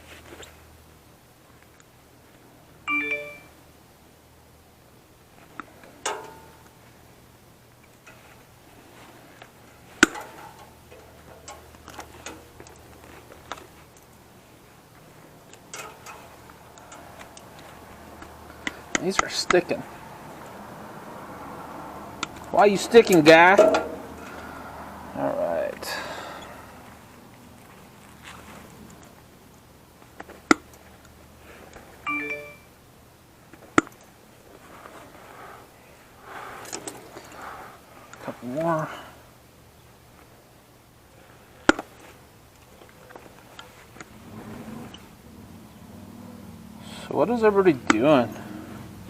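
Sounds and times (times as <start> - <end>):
metal parts and tools clicking: 15.5 - 19.3
sharp loud metal knocks: 23.5 - 24.1
short metallic ring: 23.6 - 24.2.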